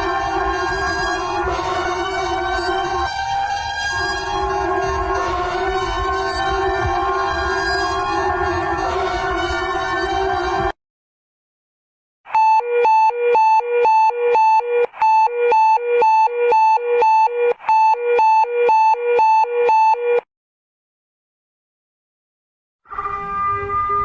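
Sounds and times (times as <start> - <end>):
hi-lo electronic alarm tone: 0.0 - 10.7, 12.3 - 20.2.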